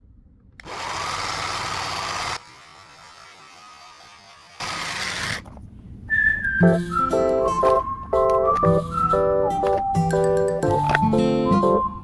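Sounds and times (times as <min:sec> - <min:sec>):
toy car electric motor buzzing: 0:00.6 - 0:05.5.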